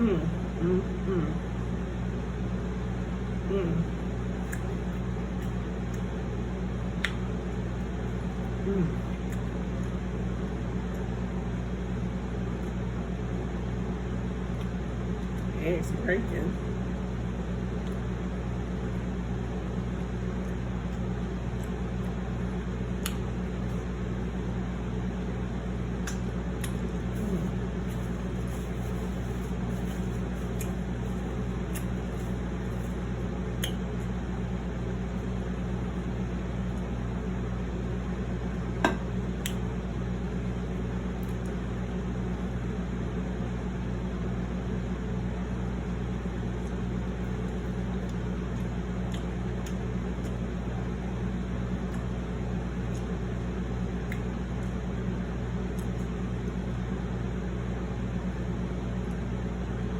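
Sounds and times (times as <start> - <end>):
mechanical hum: 0.0 - 59.9
quiet eating sounds: 3.1 - 13.6, 14.3 - 24.7, 25.4 - 37.2, 45.8 - 57.4.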